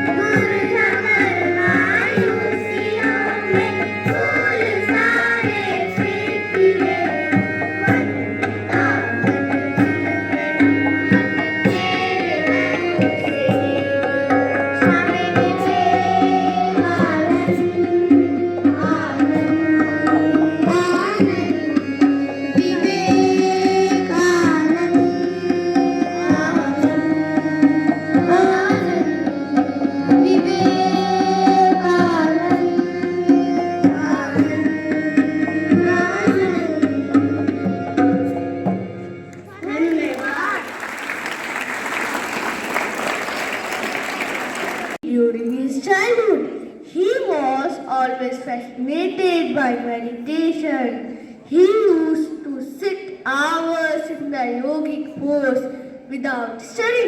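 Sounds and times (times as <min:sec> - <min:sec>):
tabla drumming: 0:00.0 - 0:45.1.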